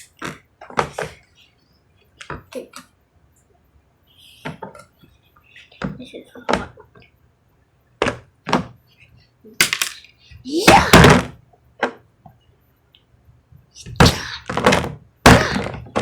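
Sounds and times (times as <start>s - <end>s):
plastic toy parts knocking: 9.6s - 10.0s
child shouting: 10.5s - 11.1s.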